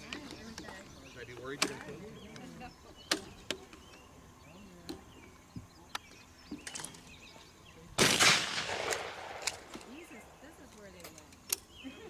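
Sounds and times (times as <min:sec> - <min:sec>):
loud gunshot with echo: 0:08.0 - 0:09.7
faint sharp cracks: 0:08.0 - 0:10.0.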